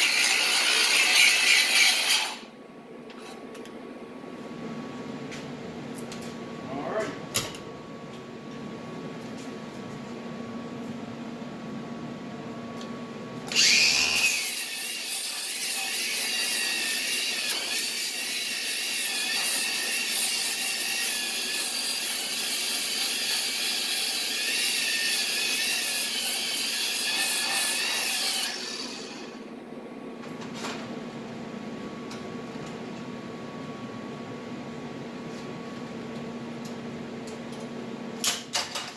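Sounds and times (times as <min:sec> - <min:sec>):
angle grinder whining: 0:00.0 - 0:02.4, 0:13.5 - 0:17.8.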